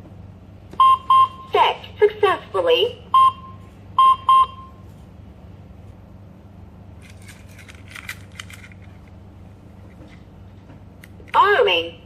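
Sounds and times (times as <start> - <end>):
steady low hum: 0.0 - 12.0
short electronic beeps: 0.8 - 1.5, 3.2 - 4.8
plastic clicks and rattles: 7.0 - 8.9.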